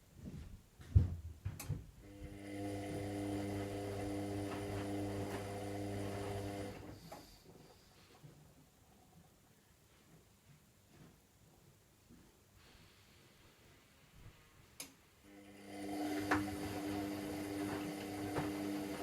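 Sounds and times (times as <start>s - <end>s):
washing machine drum motor hum: 1.6s - 6.9s, 15.6s - 19.0s.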